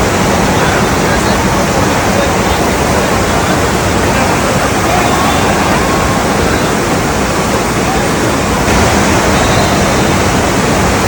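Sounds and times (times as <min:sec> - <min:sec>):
faint voices calling out: 0:00.0 - 0:11.0
rushing water: 0:00.0 - 0:11.0.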